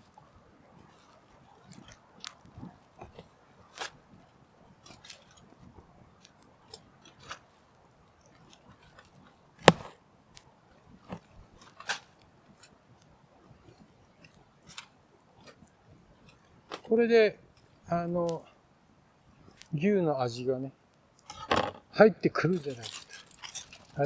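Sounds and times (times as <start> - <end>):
sharp loud click: 9.7 - 9.9.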